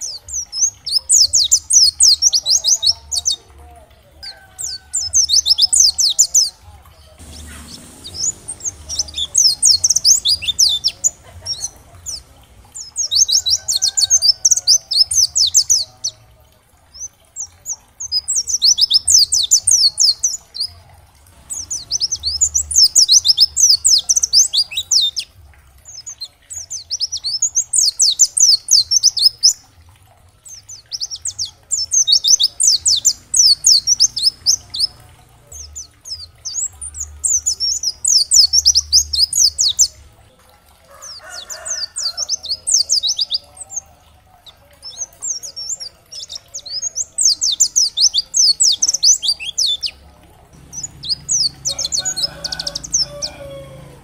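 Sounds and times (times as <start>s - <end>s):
bird twittering: 7.2s - 16.2s, 50.6s - 54.0s.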